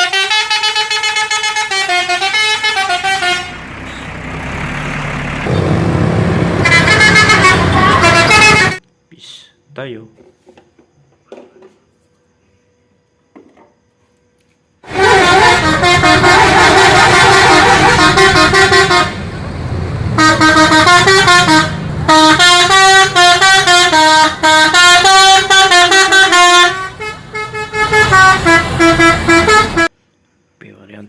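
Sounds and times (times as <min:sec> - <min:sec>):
musical bus horn: 0:00.0 - 0:04.4, 0:05.1 - 0:08.8, 0:14.8 - 0:30.0.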